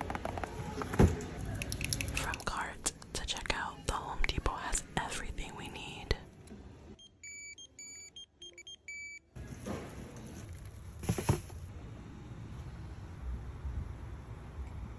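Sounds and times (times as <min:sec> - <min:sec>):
short electronic beeps: 0:07.0 - 0:09.2
rustling handling noise: 0:09.4 - 0:11.7.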